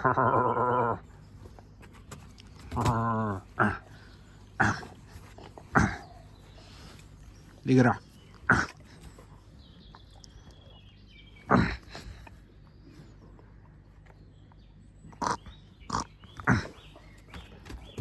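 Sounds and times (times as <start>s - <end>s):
animal calls: 2.6s - 12.3s, 15.1s - 18.0s.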